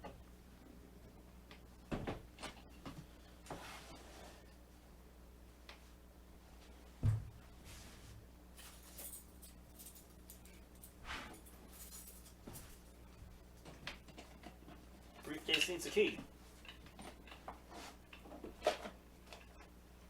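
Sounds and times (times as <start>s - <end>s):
low electrical hum: 0.0s - 20.0s
dull thump: 7.0s - 7.4s
objects rustling and knocking: 7.0s - 19.7s.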